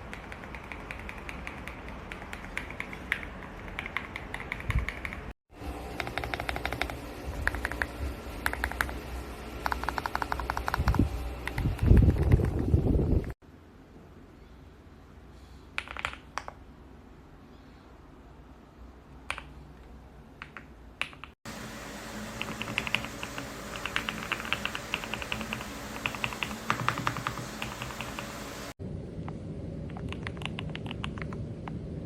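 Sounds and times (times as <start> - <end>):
mechanical keyboard typing: 0.0 - 5.3, 6.0 - 9.0, 9.6 - 12.6, 15.8 - 16.6, 22.4 - 28.4, 29.9 - 31.5.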